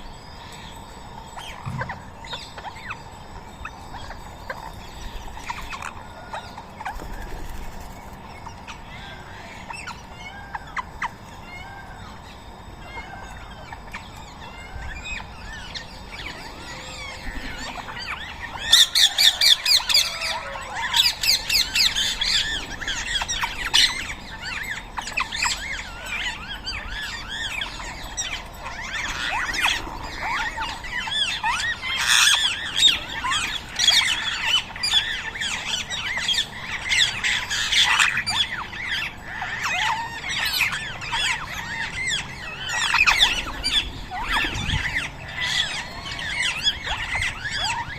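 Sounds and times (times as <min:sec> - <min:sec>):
parakeets squawking: 0:03.6 - 0:07.3, 0:14.7 - 0:47.9.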